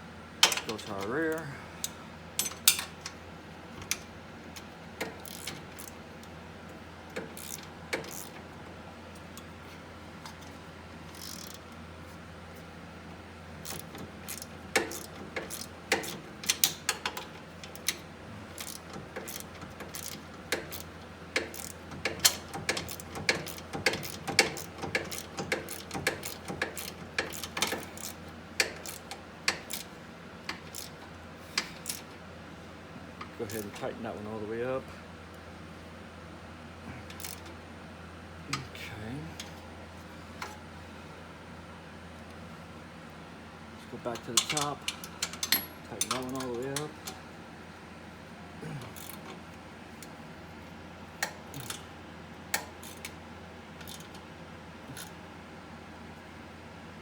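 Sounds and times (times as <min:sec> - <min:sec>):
hand ratchet clicking: 0:05.0 - 0:06.0, 0:07.2 - 0:08.4, 0:11.1 - 0:11.6, 0:13.6 - 0:29.9, 0:30.5 - 0:31.0, 0:31.6 - 0:32.1, 0:37.1 - 0:37.5, 0:44.3 - 0:47.2, 0:48.9 - 0:49.4, 0:51.2 - 0:51.9, 0:52.5 - 0:53.2, 0:53.8 - 0:54.2, 0:54.9 - 0:55.2.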